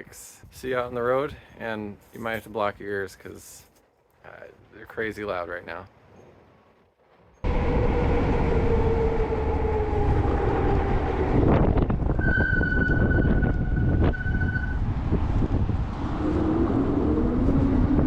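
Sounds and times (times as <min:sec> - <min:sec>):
wind: 0:00.0 - 0:18.0
road rumble: 0:06.5 - 0:18.0
disc brake squeal: 0:12.2 - 0:14.8.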